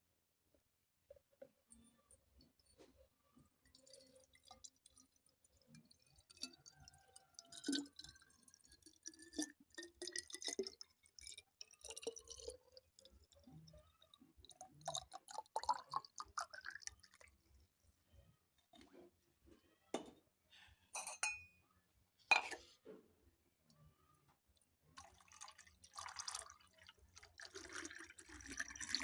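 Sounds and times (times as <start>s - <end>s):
glassy clicks and clinks: 21.0s - 21.5s.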